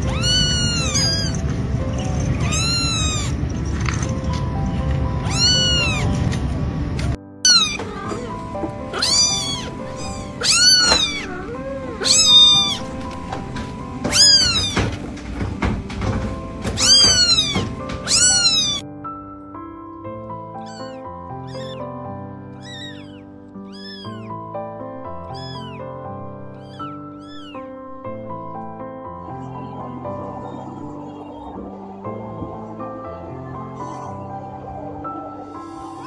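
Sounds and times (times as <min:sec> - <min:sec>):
kittens meowing: 0:00.0 - 0:03.5, 0:05.1 - 0:06.3, 0:07.4 - 0:15.0, 0:15.6 - 0:18.8, 0:20.4 - 0:24.4, 0:25.0 - 0:28.6, 0:29.3 - 0:32.6, 0:33.3 - 0:34.4
background music: 0:00.0 - 0:36.0.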